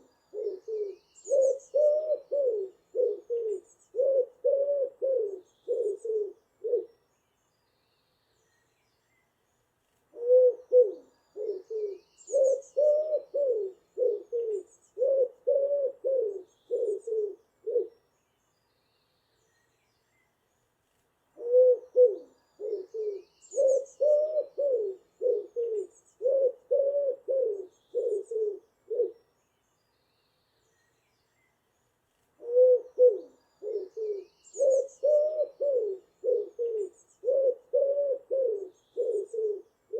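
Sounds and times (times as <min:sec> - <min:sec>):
faint high bird chirps: 0:00.0 - 0:04.4, 0:05.1 - 0:15.4, 0:21.4 - 0:26.6, 0:27.4 - 0:37.7, 0:38.4 - 0:39.9
pigeon cooing: 0:00.0 - 0:06.9, 0:10.1 - 0:17.9, 0:21.4 - 0:29.2, 0:32.4 - 0:39.7.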